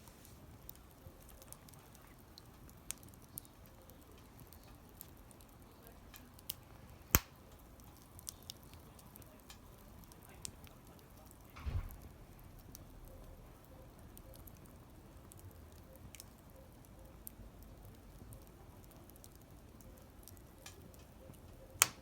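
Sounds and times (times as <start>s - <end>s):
fire popping: 0.0s - 22.0s
wood fire crackling: 0.0s - 22.0s
low thump: 11.6s - 12.0s.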